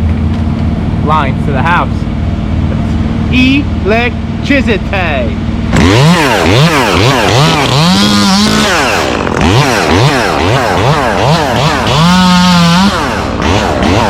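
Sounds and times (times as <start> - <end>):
chainsaw engine revving: 5.7 - 14.0.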